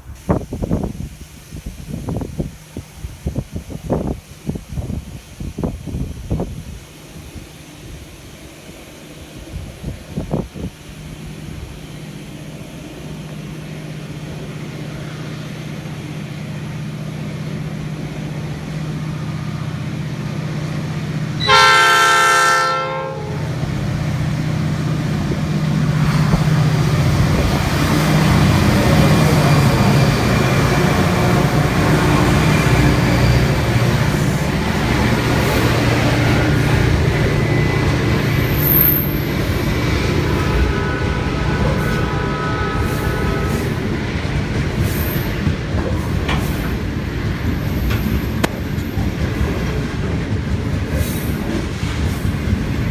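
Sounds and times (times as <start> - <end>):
wind buffeting microphone: 0.0 - 13.6, 23.5 - 38.6
diesel locomotive engine drone: 0.0 - 52.9
train horn blast: 21.4 - 24.0, 25.2 - 38.2, 38.8 - 44.2.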